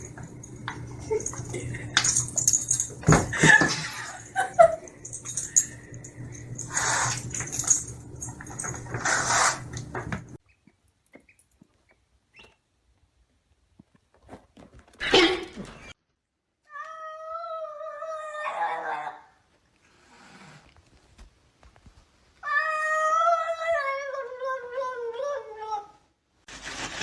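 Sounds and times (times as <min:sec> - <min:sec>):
low hum: 0:00.0 - 0:10.4.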